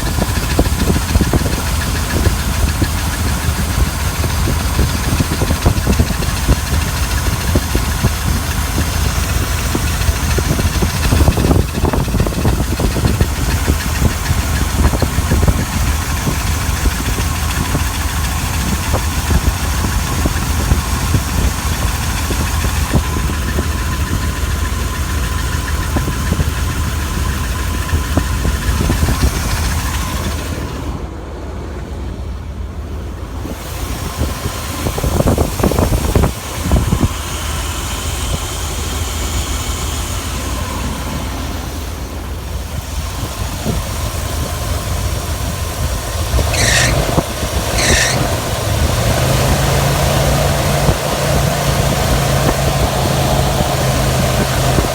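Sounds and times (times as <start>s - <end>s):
car engine idling: 0.0s - 54.9s
steady squeal: 46.2s - 48.8s.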